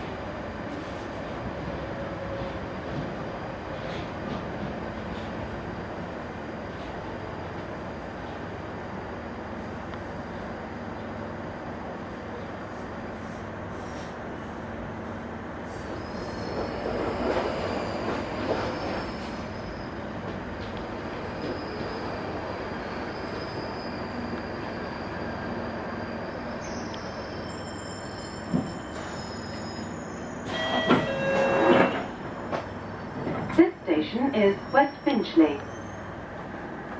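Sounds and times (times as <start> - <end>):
train running inside carriage: 0.0 - 36.9
train brakes squealing: 15.6 - 20.1, 21.1 - 32.4, 34.4 - 36.9.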